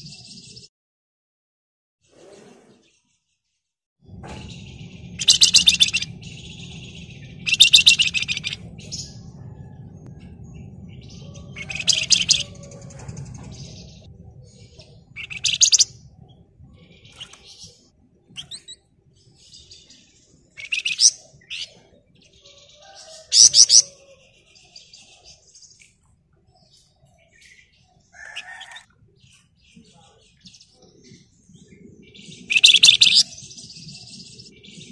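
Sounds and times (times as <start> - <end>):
soft high bird calls: 4.2 - 34.9
songbird harsh chattering trill: 4.5 - 9.2, 11.2 - 12.7, 15.1 - 16.0, 32.5 - 33.4.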